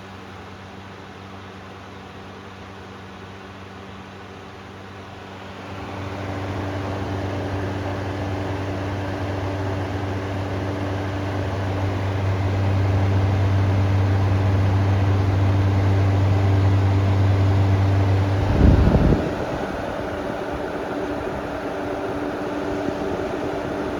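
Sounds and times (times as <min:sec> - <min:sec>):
table fan running: 0:05.2 - 0:23.9.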